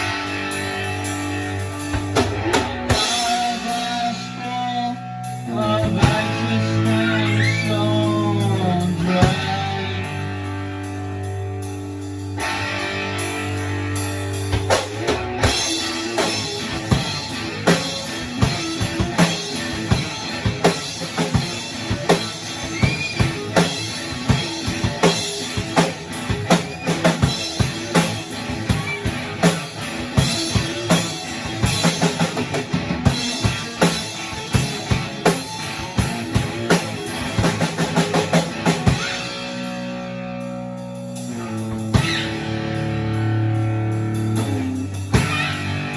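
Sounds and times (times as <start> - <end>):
drum kit beat: 0.0 - 45.9
guitar chords: 0.0 - 45.9.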